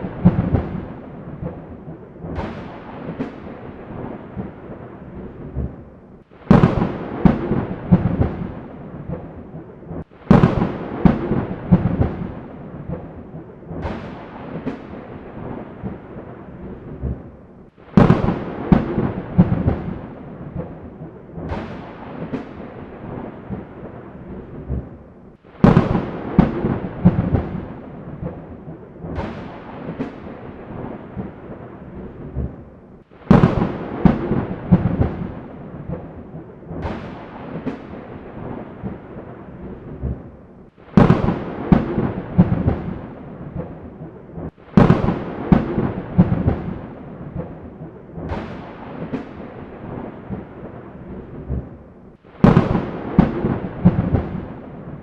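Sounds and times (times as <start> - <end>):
thunder cracks with rumble: 0.0 - 55.0
rain hiss: 17.6 - 24.4, 25.3 - 31.8, 33.0 - 39.6, 52.1 - 55.0.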